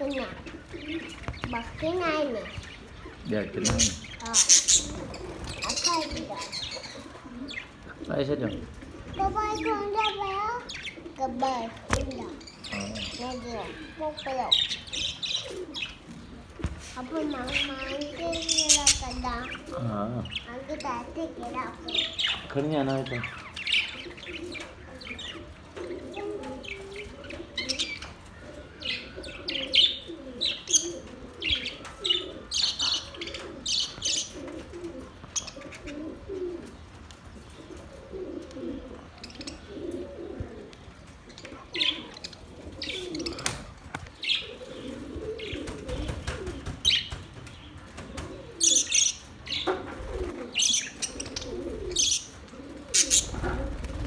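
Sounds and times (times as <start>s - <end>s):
low cooing: 23.9s - 36.8s, 37.6s - 40.8s, 41.4s - 46.7s, 49.9s - 54.0s
budgerigars chirping: 52.9s - 53.6s.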